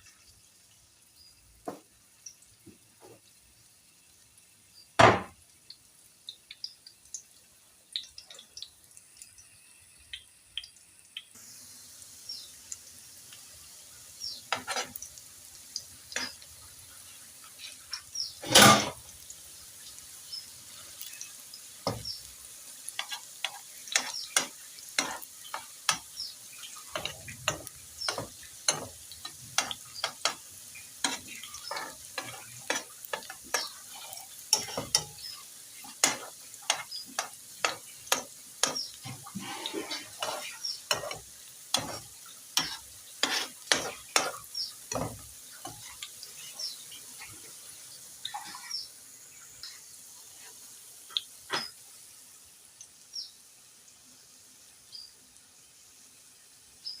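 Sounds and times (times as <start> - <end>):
hot oil sizzling: 0.0 - 57.0
metal utensils clicking on pan: 14.5 - 15.1, 16.1 - 16.4, 17.9 - 19.0, 22.9 - 46.8.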